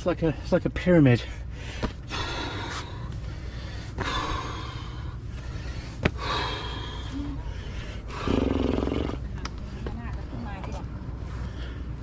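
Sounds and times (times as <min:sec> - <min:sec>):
person breathing hard: 0:01.2 - 0:08.7, 0:11.2 - 0:12.0.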